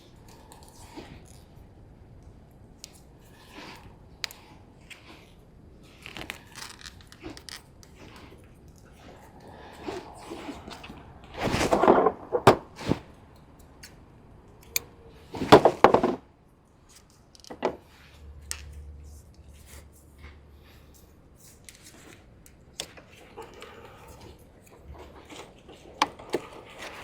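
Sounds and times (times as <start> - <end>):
tools and parts clicking and rustling: 16.9 - 17.9.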